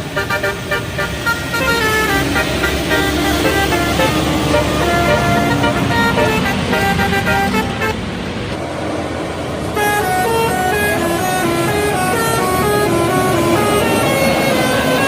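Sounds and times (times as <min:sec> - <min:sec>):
air-horn trumpets playing a tune: 0:00.0 - 0:08.0, 0:09.8 - 0:15.0
road noise: 0:00.0 - 0:15.0.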